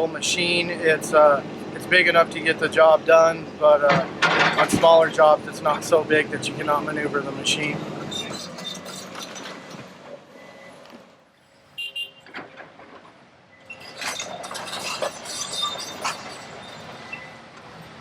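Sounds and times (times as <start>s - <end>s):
excavator running: 0.0s - 18.0s
metal and rubble clanking: 3.7s - 5.4s, 7.6s - 10.2s, 12.2s - 17.3s.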